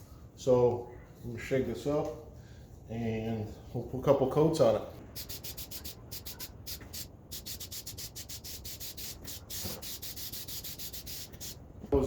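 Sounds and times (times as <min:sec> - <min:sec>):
aerosol spray hissing pulses: 0:05.0 - 0:11.6.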